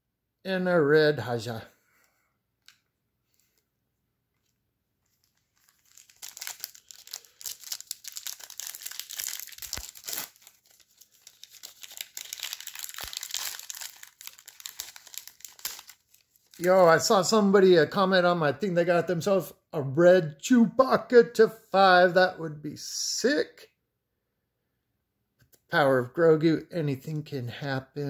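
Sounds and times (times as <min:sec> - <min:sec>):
foil wrapper crinkling and tearing: 0:05.1 - 0:17.0.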